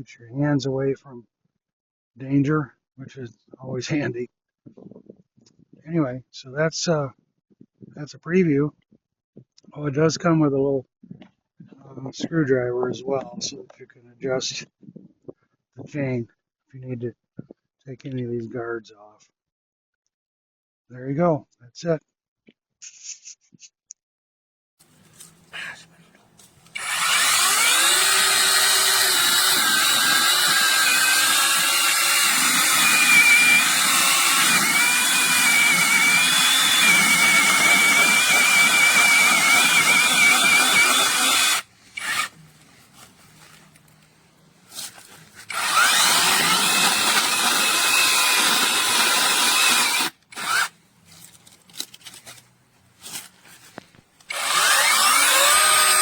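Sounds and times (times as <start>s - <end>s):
electric chainsaw motor whining: 26.4s - 42.4s, 44.8s - 52.2s, 54.2s - 56.0s.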